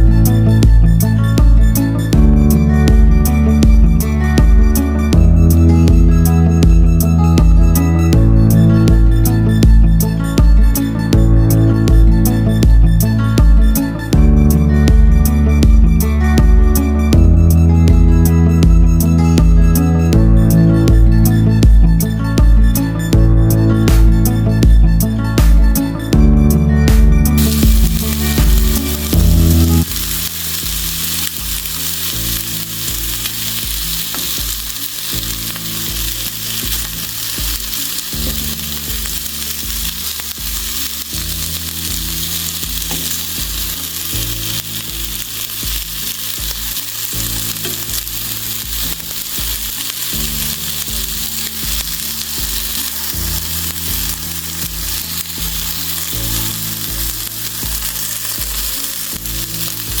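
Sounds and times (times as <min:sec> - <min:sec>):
background music with bass pulse: 0:00.0 - 1:00.0
food sizzling in a pan: 0:27.4 - 1:00.0.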